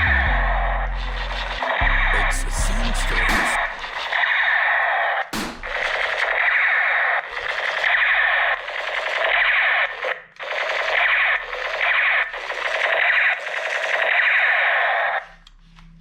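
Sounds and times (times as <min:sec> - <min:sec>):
tinny machine-gun fire: 0:02.7 - 0:04.1, 0:05.4 - 0:06.7.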